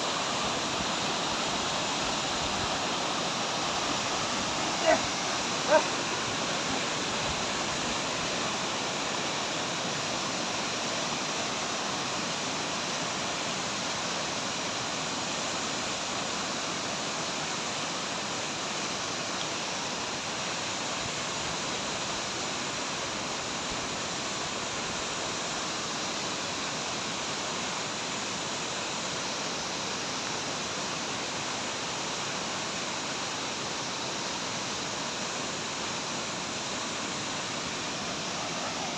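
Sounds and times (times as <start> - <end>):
waterfall roaring: 0.0 - 19.0, 29.9 - 38.9.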